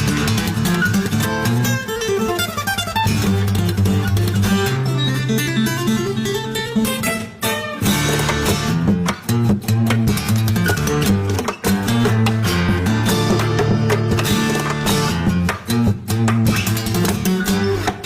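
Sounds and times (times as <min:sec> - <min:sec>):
plucked acoustic guitar music: 0:00.0 - 0:18.0
steady bass notes: 0:08.3 - 0:16.4.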